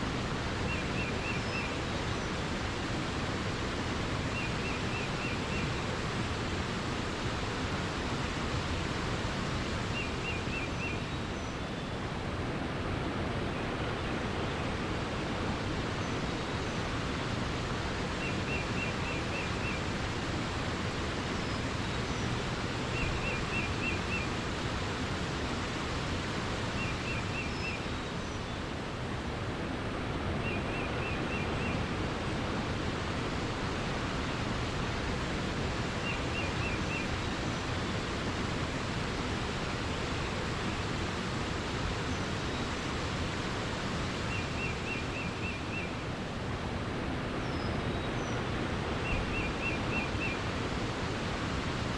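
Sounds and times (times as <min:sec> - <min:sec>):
flowing water rushing: 0:00.0 - 0:51.9
faint bird chirps: 0:26.8 - 0:28.6.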